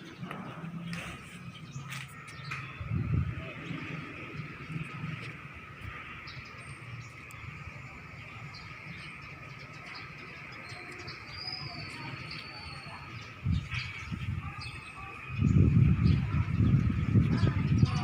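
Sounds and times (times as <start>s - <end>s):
steady high background drone: 0.0s - 18.0s
wild birds chirping: 0.0s - 18.0s.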